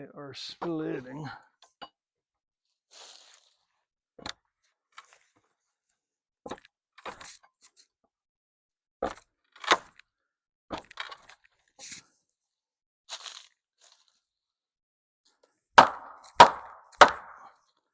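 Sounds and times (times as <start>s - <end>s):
crunching and scraping wood: 2.9s - 5.5s, 6.5s - 7.9s, 10.7s - 12.2s, 13.1s - 14.3s.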